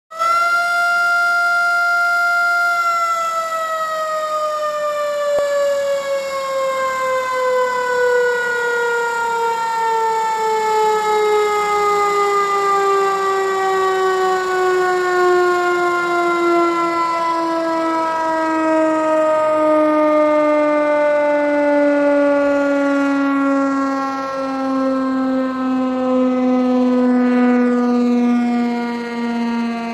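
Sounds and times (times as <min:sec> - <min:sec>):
air raid siren wailing: 0:00.1 - 0:29.9.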